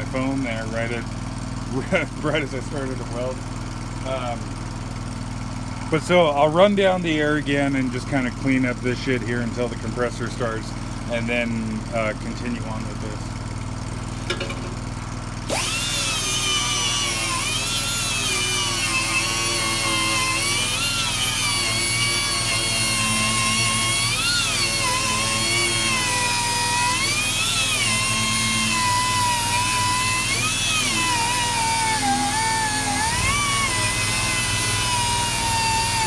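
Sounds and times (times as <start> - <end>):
pneumatic grinder whining: 0.0 - 36.0.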